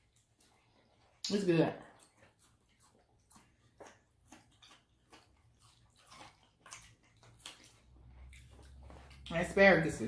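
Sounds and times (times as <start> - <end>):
wet chewing of food: 0.0 - 10.0.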